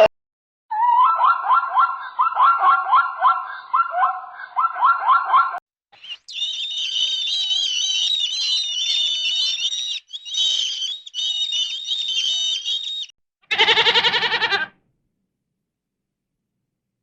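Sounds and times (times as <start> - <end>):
high warbling chirps: 6.0 - 13.1
goat bleating: 13.5 - 14.7.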